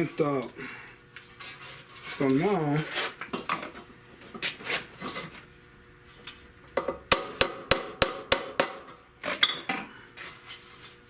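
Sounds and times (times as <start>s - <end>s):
hammer tapping metal: 6.8s - 8.9s.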